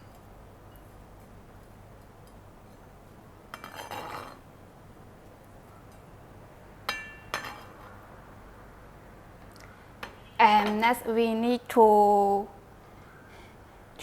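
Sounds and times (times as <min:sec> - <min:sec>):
kitchenware clinking: 0:06.9 - 0:07.7.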